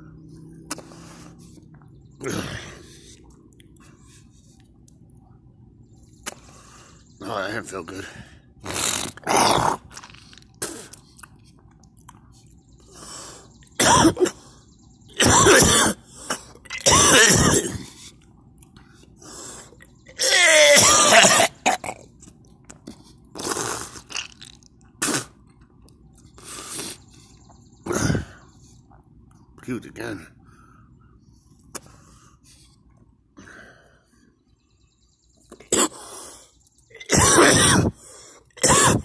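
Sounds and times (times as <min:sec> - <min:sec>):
person retching: 0:08.6 - 0:10.9, 0:13.8 - 0:14.4, 0:15.2 - 0:17.9, 0:20.1 - 0:22.2, 0:23.3 - 0:25.4, 0:35.5 - 0:36.1, 0:36.9 - 0:38.0, 0:38.6 - 0:39.0
person coughing hard: 0:13.8 - 0:14.4, 0:15.2 - 0:17.9, 0:20.2 - 0:22.0, 0:37.1 - 0:38.0, 0:38.6 - 0:39.0.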